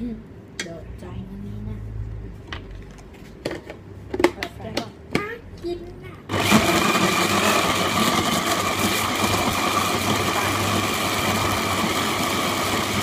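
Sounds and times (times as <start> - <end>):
kitchen blender running: 6.3 - 13.0.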